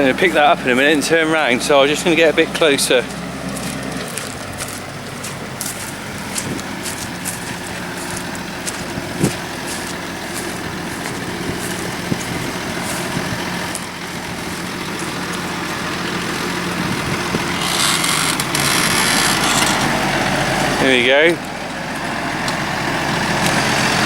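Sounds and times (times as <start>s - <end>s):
tractor engine under load: 0.0s - 24.0s.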